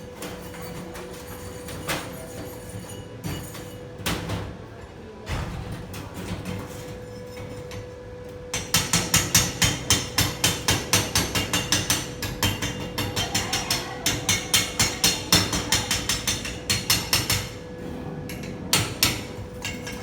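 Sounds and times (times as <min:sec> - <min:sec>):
hammer striking metal: 0:08.5 - 0:17.6, 0:18.3 - 0:20.0.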